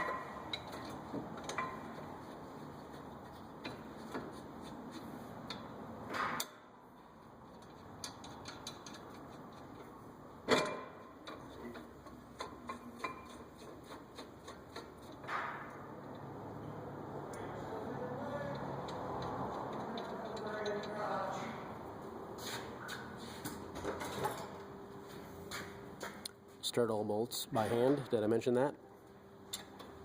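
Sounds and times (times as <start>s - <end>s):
metallic clicks and taps of brake parts: 3.2s - 6.6s, 7.5s - 16.3s, 18.5s - 21.0s, 29.5s - 30.0s.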